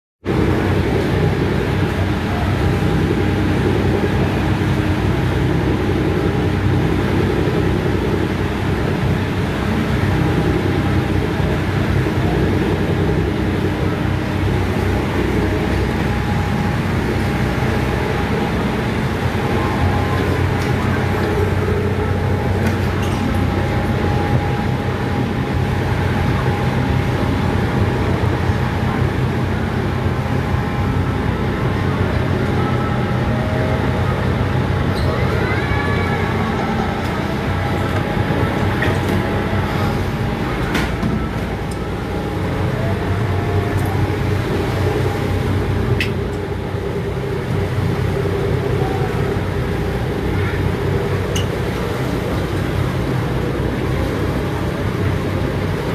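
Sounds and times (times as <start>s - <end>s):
boat engine running: 0.2s - 55.9s
rush of noise: 0.3s - 55.9s.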